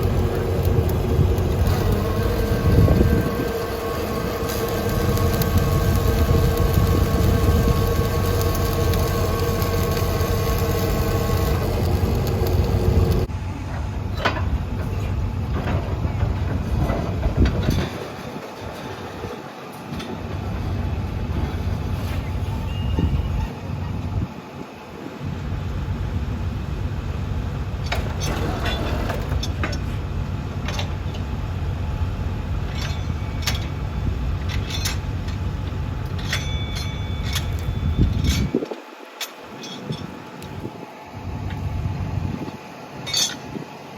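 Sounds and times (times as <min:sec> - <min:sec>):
heavy machinery engine running: 0:00.0 - 0:23.9, 0:25.3 - 0:38.6
thin high squeal: 0:22.3 - 0:23.6
sharp metallic clanks: 0:32.6 - 0:40.7, 0:43.0 - 0:43.6.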